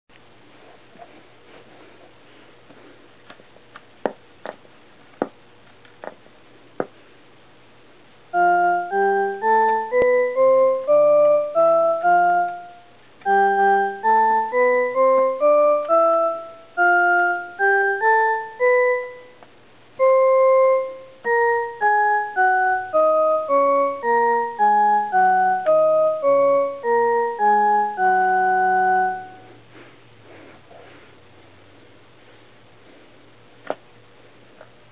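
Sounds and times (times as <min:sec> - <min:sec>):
sampling keyboard single notes: 0:08.3 - 0:29.6.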